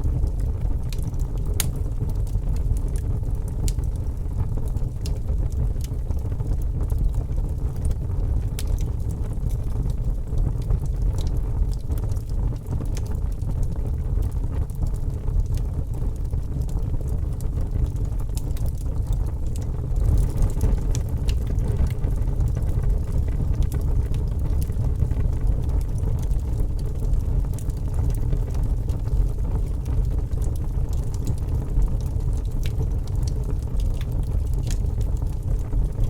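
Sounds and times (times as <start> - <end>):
fire crackling and popping: 0.0 - 36.0.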